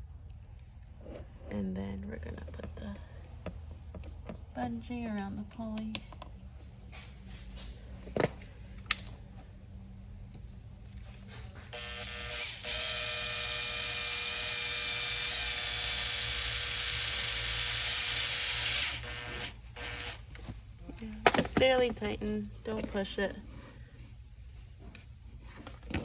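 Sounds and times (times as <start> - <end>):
power screwdriver motor running: 11.8 - 20.3.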